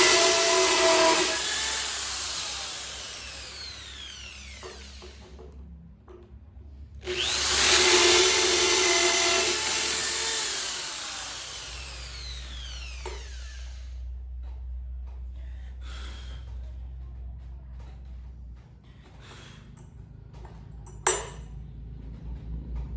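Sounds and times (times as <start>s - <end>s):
electric drill whining: 0.0s - 5.6s, 7.0s - 14.2s.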